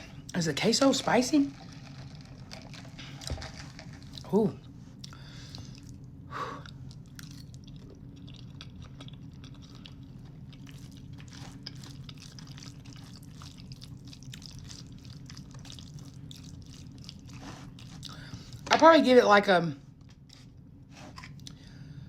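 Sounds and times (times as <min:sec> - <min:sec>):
low background hum: 0:00.0 - 0:22.0
quiet chewing: 0:01.6 - 0:18.7, 0:20.0 - 0:21.7.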